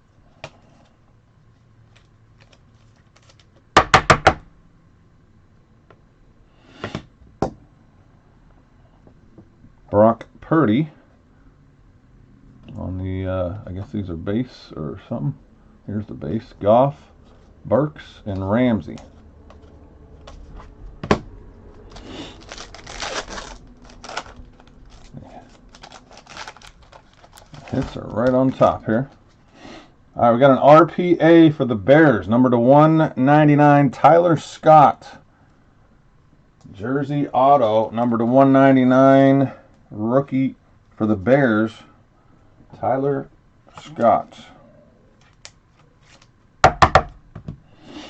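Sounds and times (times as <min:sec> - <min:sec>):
card pack wrapper crinkling: 0:01.9 - 0:03.7, 0:21.7 - 0:29.4.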